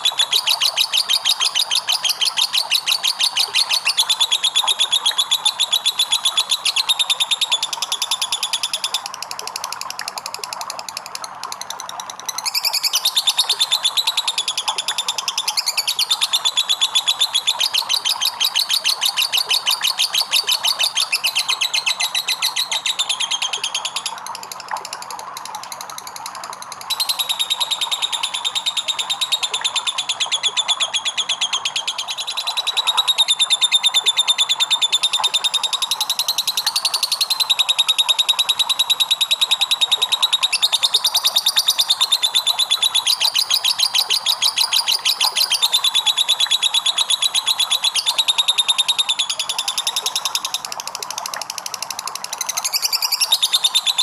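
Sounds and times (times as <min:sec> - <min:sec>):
lovebird chattering trill: 0:26.9 - 0:50.6.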